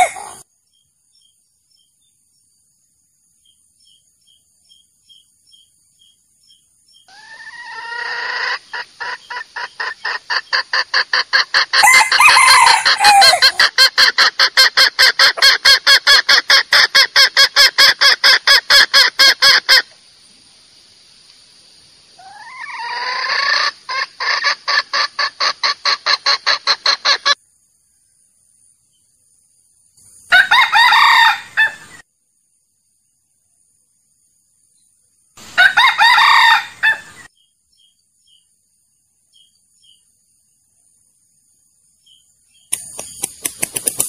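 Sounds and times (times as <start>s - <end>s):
junglefowl clucking: 0.0s - 0.4s, 7.1s - 19.9s, 22.2s - 27.4s.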